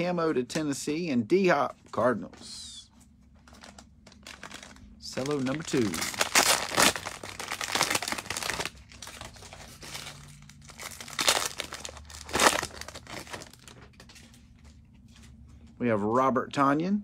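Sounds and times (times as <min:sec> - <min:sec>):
plastic wrapper crinkling: 0:03.3 - 0:14.8.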